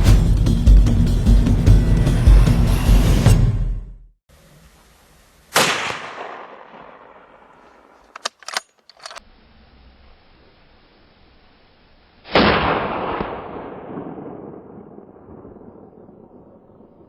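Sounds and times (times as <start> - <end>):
background music: 0.0 - 4.0
rifle shot echoing: 5.5 - 8.2, 12.3 - 15.6.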